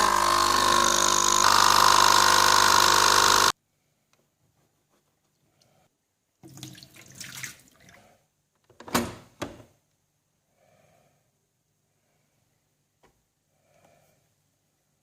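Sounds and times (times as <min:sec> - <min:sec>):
water splashing and trickling: 0:06.4 - 0:08.1.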